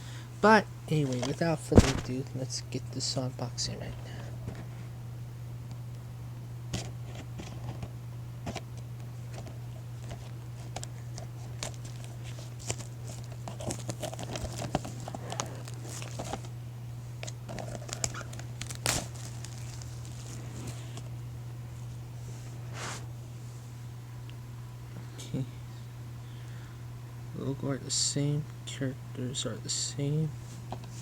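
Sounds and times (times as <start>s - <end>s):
low electrical hum: 0.0s - 31.0s
plastic wrap crinkling and tearing: 11.4s - 16.5s, 17.2s - 20.8s.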